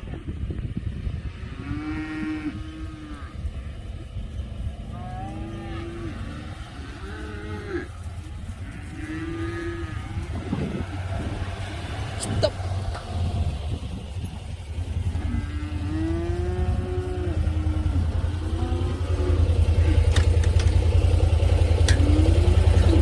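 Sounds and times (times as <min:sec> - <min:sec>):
low steady rumble: 0:00.0 - 0:23.0
cows mooing: 0:01.2 - 0:13.2, 0:14.7 - 0:23.0.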